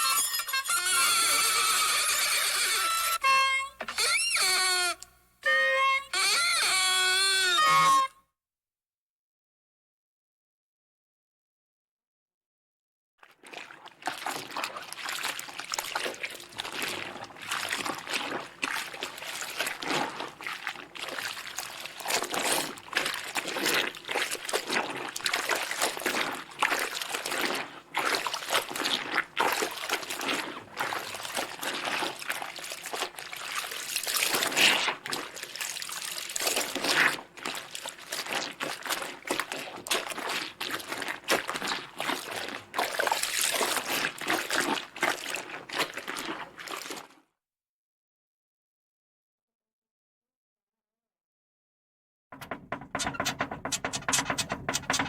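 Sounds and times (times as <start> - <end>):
water splashing in a bathtub: 0.0 - 5.0, 13.2 - 47.3, 52.4 - 55.0.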